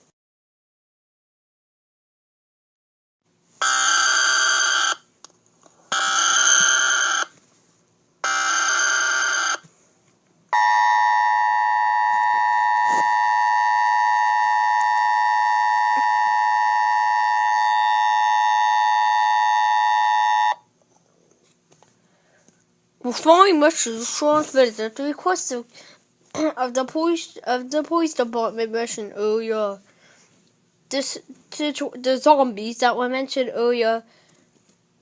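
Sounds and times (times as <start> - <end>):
screeching data bursts: 3.6 - 5.0, 5.9 - 7.3
two-tone attention signal: 10.6 - 20.6.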